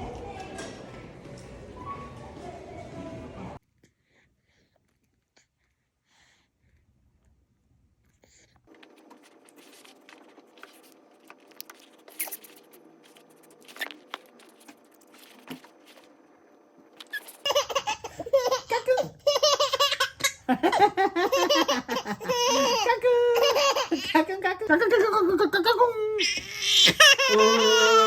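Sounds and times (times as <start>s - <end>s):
baby laughing hard: 17.1s - 24.2s, 26.2s - 28.0s.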